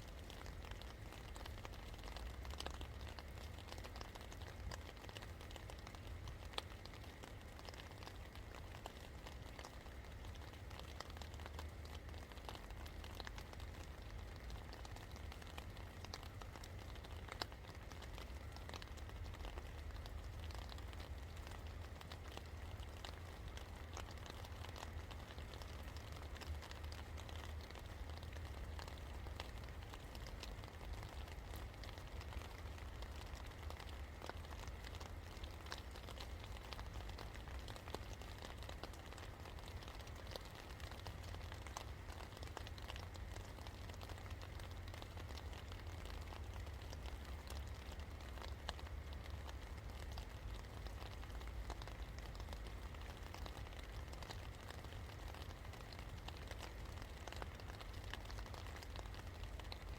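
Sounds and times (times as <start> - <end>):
low constant rumble: 0.0 - 59.9
raindrops pattering: 0.0 - 59.9.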